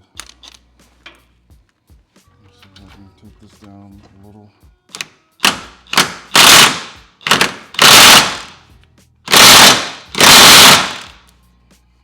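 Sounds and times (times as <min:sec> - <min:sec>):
impact wrench bursts: 0:05.4 - 0:08.6, 0:09.3 - 0:11.2.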